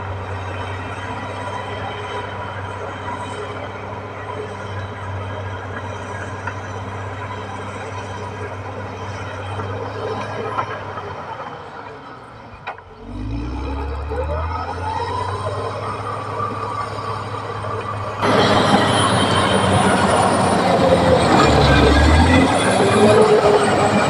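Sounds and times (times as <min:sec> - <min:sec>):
bulldozer diesel engine revving: 0:12.8 - 0:24.0
steel tracks clanking: 0:15.9 - 0:24.0.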